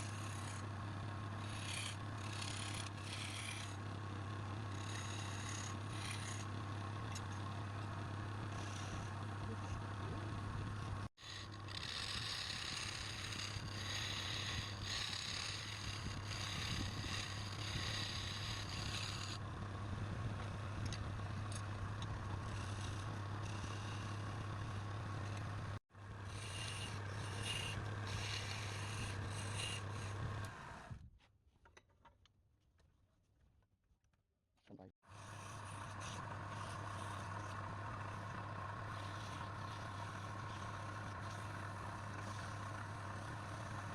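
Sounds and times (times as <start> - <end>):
turning tool scraping wood: 0.0 - 19.4, 20.4 - 31.0, 35.2 - 43.9
wood lathe motor hum: 0.0 - 30.9, 35.1 - 43.9.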